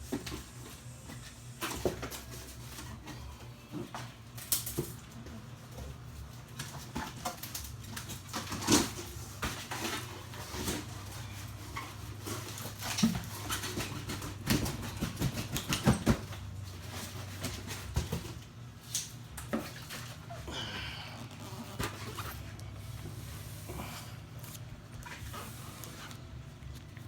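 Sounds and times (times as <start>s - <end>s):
steady low hum: 0.0s - 27.0s
cardboard rustling and scraping: 5.6s - 18.6s, 19.4s - 27.0s.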